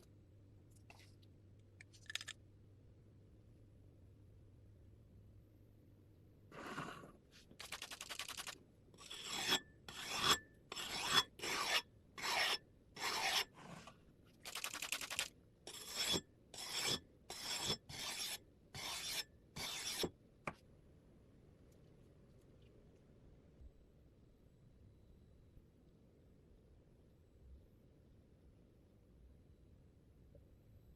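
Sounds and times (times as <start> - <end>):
file rasping on steel: 9.0 - 13.8, 15.7 - 20.1.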